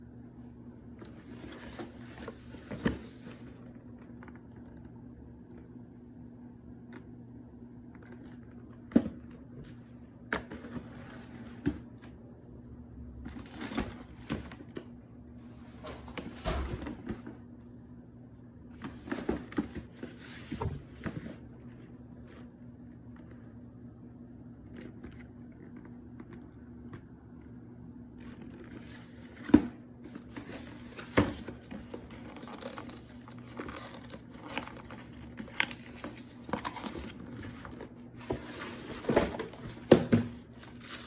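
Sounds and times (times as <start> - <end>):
low electrical hum: 0.0 - 41.0
paper rustling: 28.2 - 41.0.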